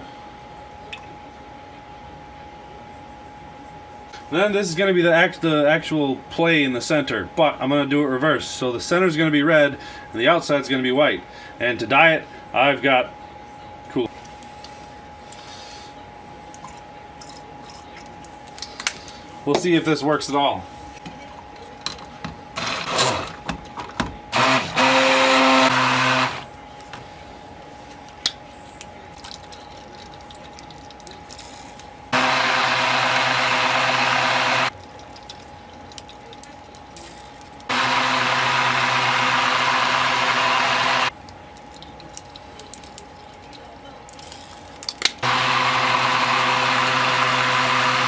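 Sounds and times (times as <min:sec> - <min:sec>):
immersion blender whirring: 0:22.6 - 0:23.4, 0:24.3 - 0:26.5, 0:32.1 - 0:34.7, 0:37.7 - 0:41.1, 0:45.2 - 0:48.0.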